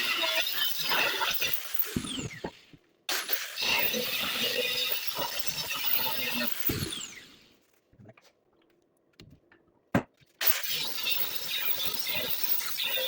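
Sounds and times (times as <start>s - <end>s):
power tool working metal: 10.4s - 13.0s.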